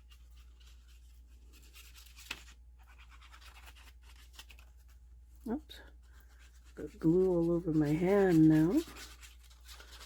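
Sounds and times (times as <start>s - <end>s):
brushing glue on paper: 5.9s - 10.0s.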